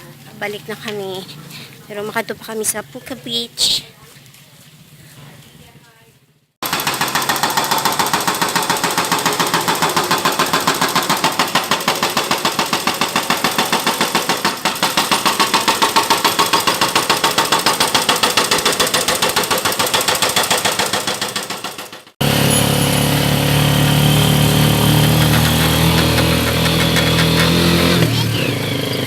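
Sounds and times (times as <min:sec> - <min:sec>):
small engine running: 0:06.6 - 0:29.0.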